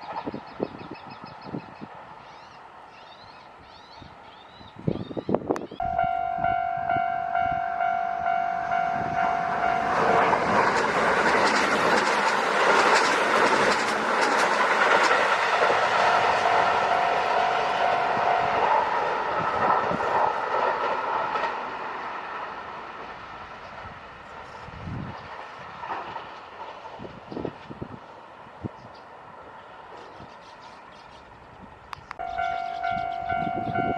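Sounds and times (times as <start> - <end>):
level crossing alarm ringing: 5.8 - 10.6, 15.4 - 19.4, 32.2 - 33.9
train wheels clattering over rails: 9.4 - 18.0, 18.6 - 24.6.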